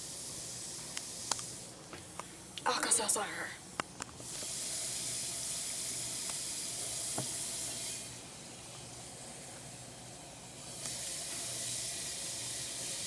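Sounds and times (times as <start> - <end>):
tablet fizzing in water: 10.6 - 13.0.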